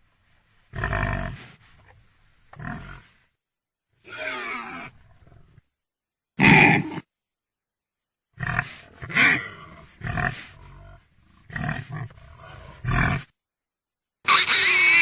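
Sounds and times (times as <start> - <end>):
pig grunting: 6.4 - 7.0, 8.4 - 13.3
pig squealing: 14.3 - 15.0.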